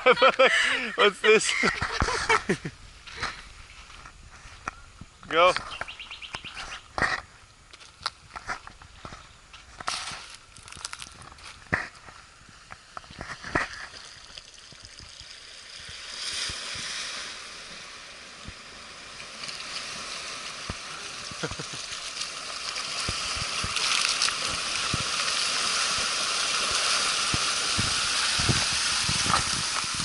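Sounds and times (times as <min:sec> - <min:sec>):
water splashing and rushing: 0:10.0 - 0:30.0.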